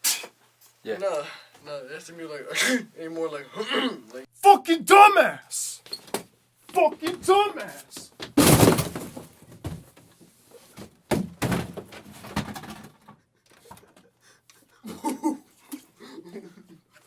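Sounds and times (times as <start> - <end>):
dull thumps and knocks: 8.2 - 10.1, 10.8 - 13.1.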